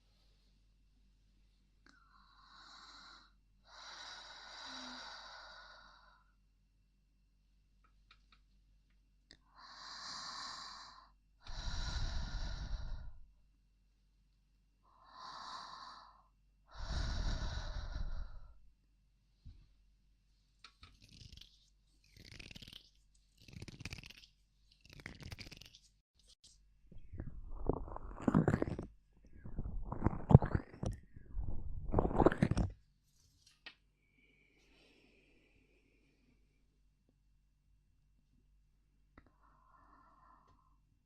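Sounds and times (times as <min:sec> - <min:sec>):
close-miked breathing: 0:01.5 - 0:06.4, 0:09.4 - 0:13.4, 0:14.8 - 0:18.7, 0:34.0 - 0:36.7, 0:39.2 - 0:40.9.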